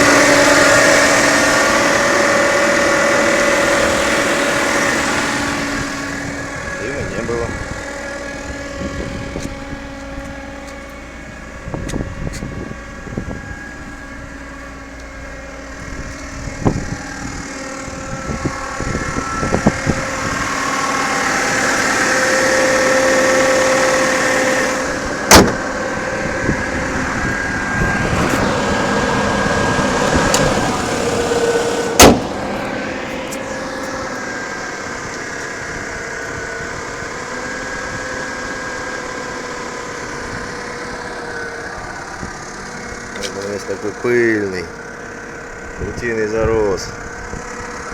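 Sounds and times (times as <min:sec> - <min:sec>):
car engine running: 0:00.0 - 0:47.9
gearbox whine: 0:00.0 - 0:47.9
sharp knocks: 0:25.3 - 0:25.6, 0:32.0 - 0:32.3.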